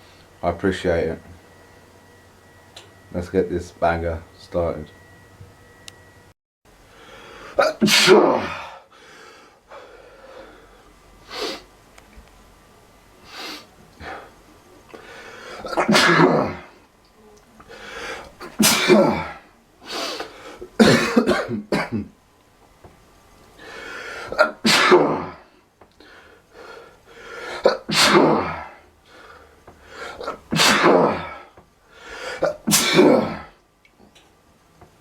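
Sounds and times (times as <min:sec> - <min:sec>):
person sneezing: 0:07.6 - 0:08.8, 0:15.6 - 0:16.7, 0:18.4 - 0:22.0, 0:24.2 - 0:25.4, 0:27.5 - 0:28.8, 0:30.1 - 0:31.5, 0:32.3 - 0:33.6.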